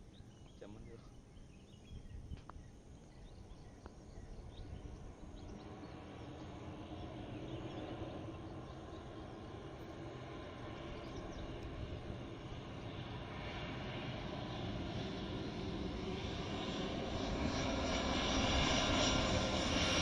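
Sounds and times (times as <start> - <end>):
small birds chirping: 0.0 - 13.0
distant airliner engine noise: 0.0 - 20.0
steady low hum: 0.0 - 20.0.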